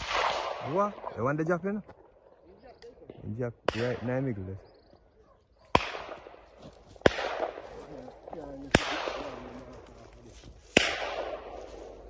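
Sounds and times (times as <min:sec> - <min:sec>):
shotgun shots echoing: 0:00.0 - 0:01.6, 0:03.0 - 0:04.6, 0:05.7 - 0:09.9, 0:10.6 - 0:12.0.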